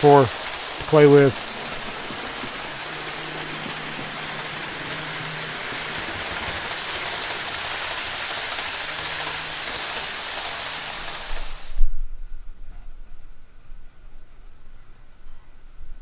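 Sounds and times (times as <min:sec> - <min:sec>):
model train wheels rolling: 0:00.0 - 0:11.9.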